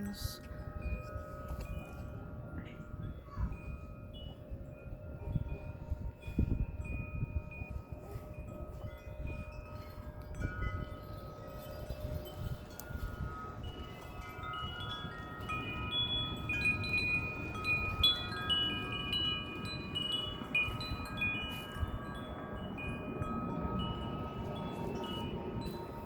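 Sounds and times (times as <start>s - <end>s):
wind chimes ringing: 0.0s - 26.0s
wind rumbling on microphone: 0.0s - 26.0s.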